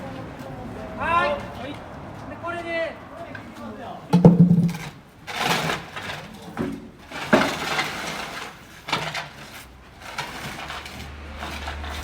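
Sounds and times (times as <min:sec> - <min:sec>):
wood knocking and clattering: 0:04.2 - 0:05.0.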